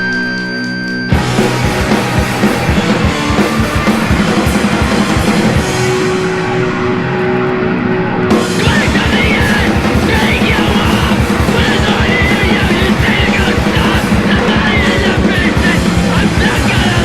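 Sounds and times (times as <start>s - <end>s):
distorted guitars: 0.0s - 17.0s
drums: 0.0s - 17.0s
person shouting vocals: 8.6s - 17.0s.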